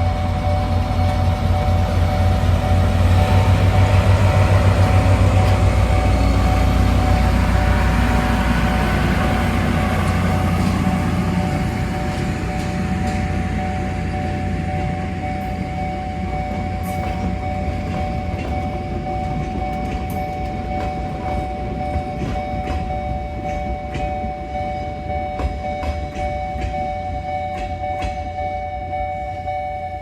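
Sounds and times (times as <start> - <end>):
diesel railcar engine rumble: 0.0 - 30.0
level crossing warning bell: 0.0 - 30.0.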